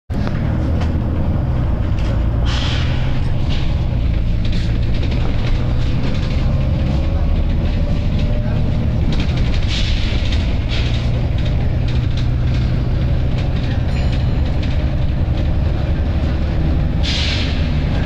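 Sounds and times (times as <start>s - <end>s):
bus diesel engine idling: 0.1s - 18.0s
compressed air hissing: 17.0s - 17.6s.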